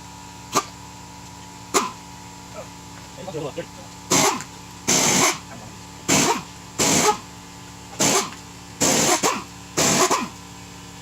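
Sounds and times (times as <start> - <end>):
pneumatic impact wrench bursts: 0.5 - 0.8, 1.7 - 2.0, 4.1 - 7.3, 7.9 - 10.4.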